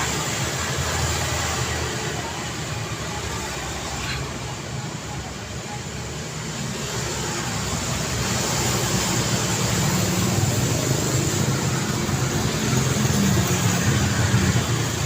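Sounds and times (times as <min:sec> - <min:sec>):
passing cars: 0:00.0 - 0:15.0.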